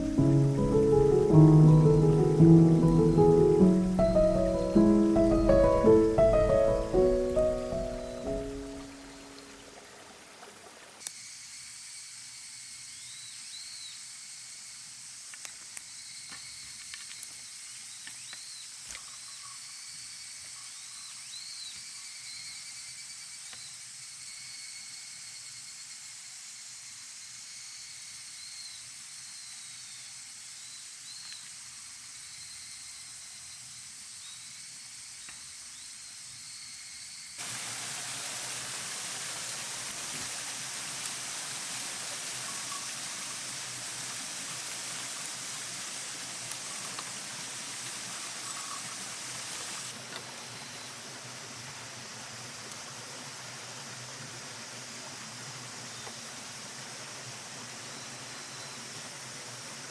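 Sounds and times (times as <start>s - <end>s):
short chirping notes: 0.0s - 9.5s
cicadas droning: 0.0s - 9.8s, 11.2s - 59.9s
even hiss: 0.0s - 9.9s, 37.4s - 59.9s.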